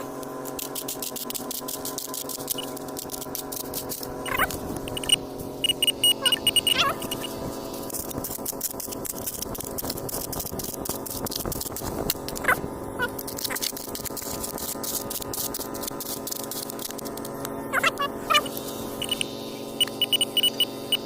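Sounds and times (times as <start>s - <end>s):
steady hum: 0.0s - 21.0s
short rising chirps: 4.3s - 7.3s, 17.8s - 21.0s.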